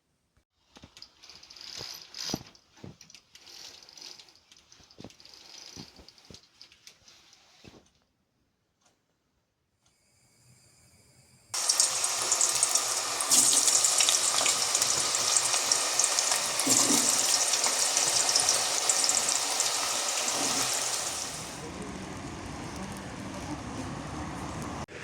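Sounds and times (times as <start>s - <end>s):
rushing water: 11.6s - 21.8s.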